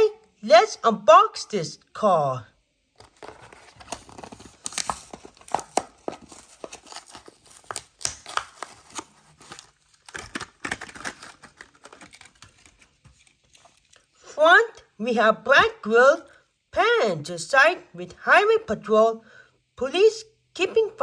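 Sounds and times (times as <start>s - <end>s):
packaging crinkling and tearing: 3.0s - 14.1s.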